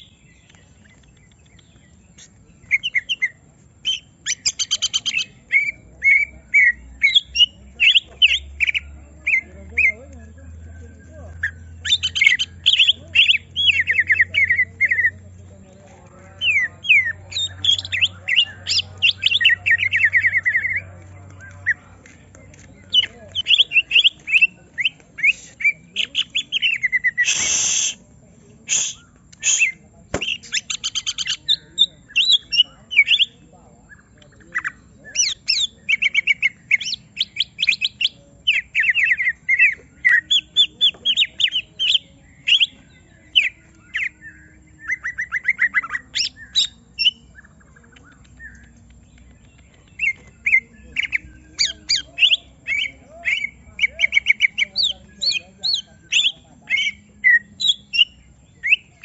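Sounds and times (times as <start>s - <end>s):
bird chirping rapidly: 0.0s - 28.1s, 28.7s - 59.0s
harsh noisy bird call: 22.9s - 48.6s, 49.9s - 59.0s.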